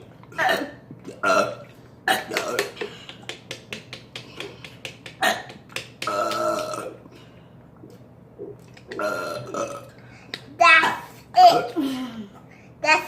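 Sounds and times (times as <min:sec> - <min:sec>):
people burping: 0:00.3 - 0:03.2, 0:05.2 - 0:07.0, 0:08.8 - 0:10.0.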